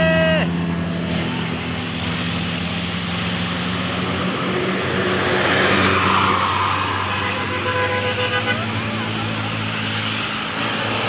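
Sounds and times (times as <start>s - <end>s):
diesel engine drone: 0.0s - 11.0s
road noise: 0.0s - 11.0s
musical bus horn: 7.1s - 10.1s.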